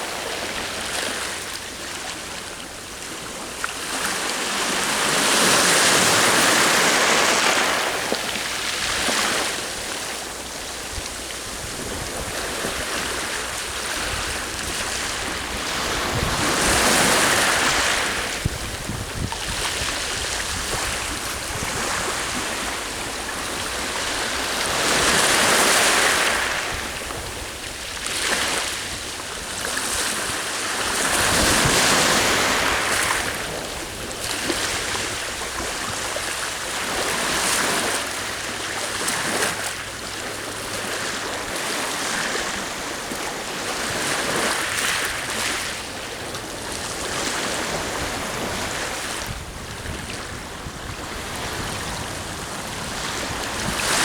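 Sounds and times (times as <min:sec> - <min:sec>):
sea waves washing onto shore: 0:00.0 - 0:54.0
wind blowing across microphone: 0:04.0 - 0:38.0, 0:41.0 - 0:54.0.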